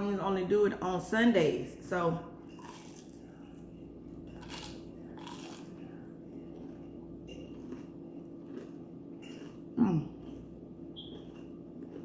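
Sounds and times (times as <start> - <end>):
chewing: 2.6 - 12.0
crunching bites of fried chicken: 4.4 - 5.8.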